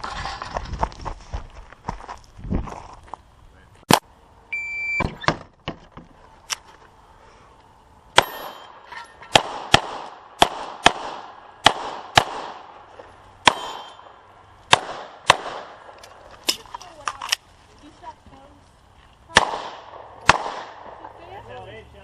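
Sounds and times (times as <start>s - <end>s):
electronic timer beep: 4.5s - 5.1s
ring of struck steel: 8.2s - 9.1s, 13.5s - 14.2s
pistol shots: 8.2s - 12.8s, 13.4s - 15.9s, 19.3s - 21.1s.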